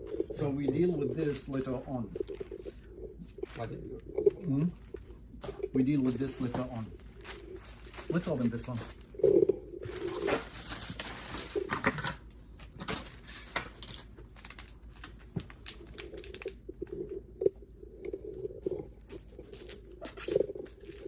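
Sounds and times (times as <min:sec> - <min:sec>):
plastic and cardboard crinkling: 0:04.4 - 0:16.8.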